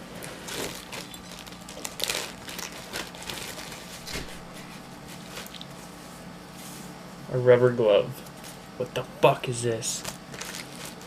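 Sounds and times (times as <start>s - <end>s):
plastic packaging crinkling: 0.1s - 5.8s, 9.9s - 11.0s.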